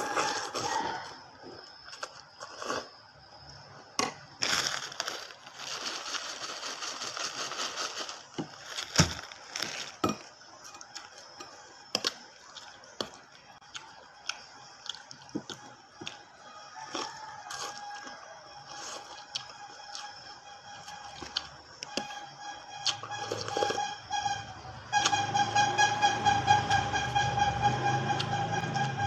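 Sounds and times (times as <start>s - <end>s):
person crunching and chewing: 16.9s - 17.8s.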